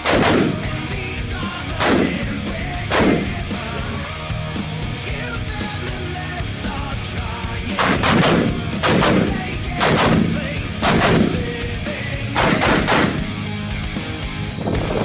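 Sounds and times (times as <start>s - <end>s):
gunshots: 0.0s - 4.1s, 7.6s - 13.7s
background music: 0.0s - 15.0s.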